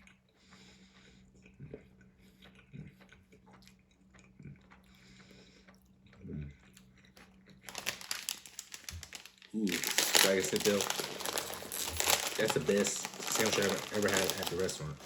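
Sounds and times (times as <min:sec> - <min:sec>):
person chewing: 0:00.0 - 0:15.0
wrapper crinkling: 0:07.6 - 0:15.0.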